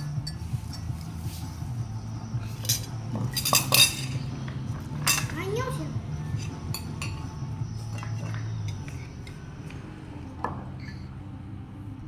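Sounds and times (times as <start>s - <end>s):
cutlery clinking against bowls: 0.0s - 1.2s, 2.5s - 9.8s
steady low hum: 0.0s - 12.0s.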